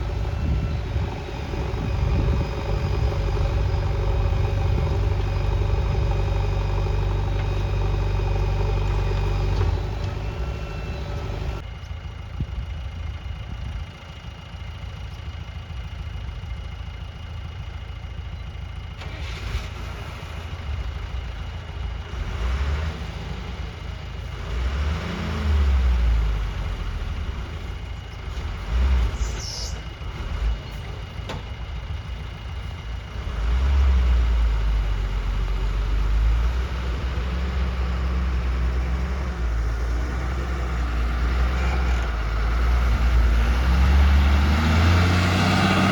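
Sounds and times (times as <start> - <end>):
diesel engine revving: 0.0 - 11.7, 18.5 - 45.9
brief high squeal: 29.0 - 29.9.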